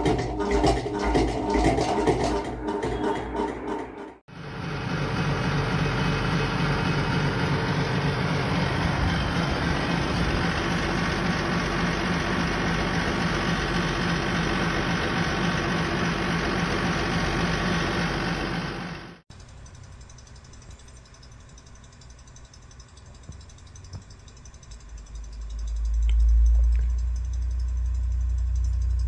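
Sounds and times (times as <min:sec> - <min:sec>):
air conditioner drone: 0:00.0 - 0:29.0
fast rattling buzz: 0:19.3 - 0:29.0.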